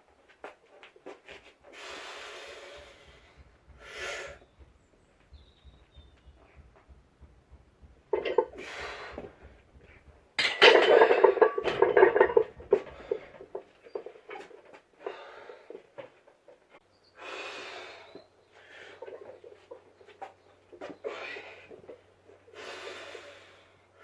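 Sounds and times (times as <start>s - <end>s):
breathy rushes of noise: 1.7s - 4.6s, 8.5s - 10.0s
metal clanking and rattling: 2.8s - 14.7s.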